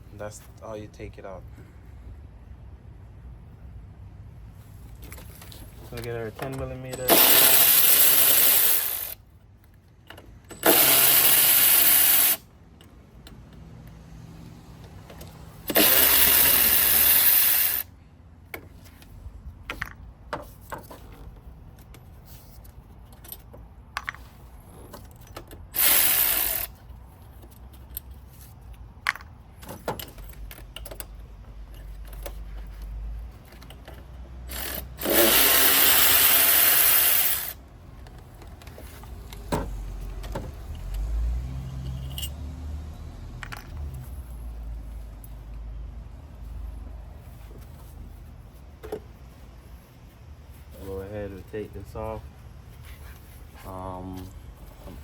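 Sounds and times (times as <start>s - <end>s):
impact wrench bursts: 6.9s - 9.2s, 10.5s - 12.5s, 15.6s - 17.9s, 25.7s - 26.8s, 34.5s - 37.6s.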